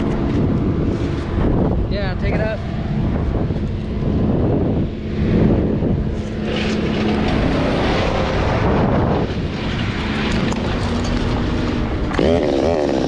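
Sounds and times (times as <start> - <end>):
chainsaw running at high revs: 10.1 - 13.0.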